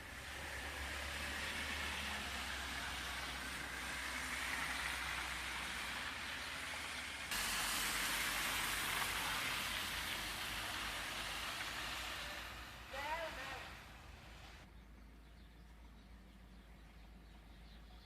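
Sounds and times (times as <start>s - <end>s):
steady hiss of snowfall: 2.0s - 14.6s.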